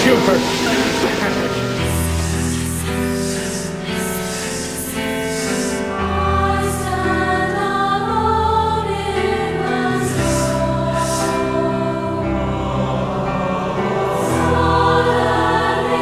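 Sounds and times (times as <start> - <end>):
low instrumental accompaniment: 0.0 - 3.3
choir singing sustained notes: 0.0 - 16.0.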